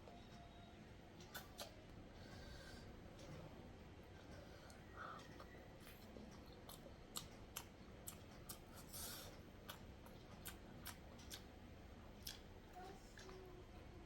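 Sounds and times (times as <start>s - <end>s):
chewing clicks and smacks: 1.2s - 1.8s, 4.7s - 11.6s, 12.2s - 12.5s.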